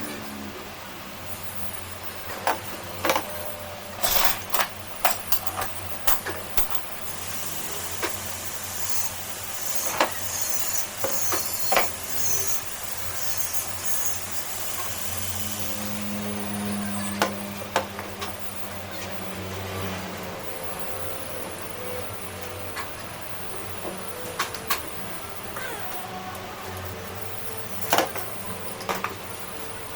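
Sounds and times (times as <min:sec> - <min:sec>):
sharp clicks and knocks: 0:02.3 - 0:07.2.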